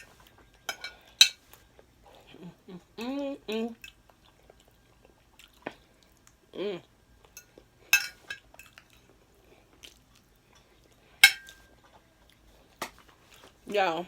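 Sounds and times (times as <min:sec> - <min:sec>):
cutlery clinking against dish: 0:00.0 - 0:01.5, 0:07.4 - 0:09.0, 0:11.2 - 0:11.7.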